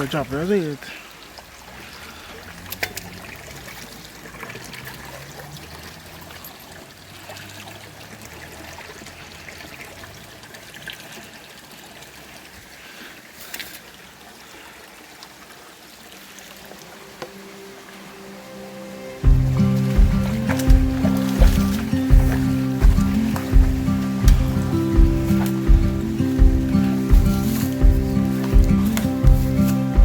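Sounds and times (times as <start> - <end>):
stream water trickling: 0.0 - 30.0.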